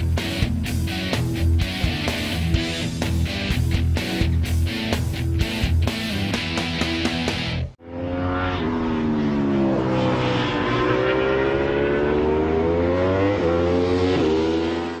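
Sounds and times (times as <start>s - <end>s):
motorcycle engine revving: 7.8s - 15.0s.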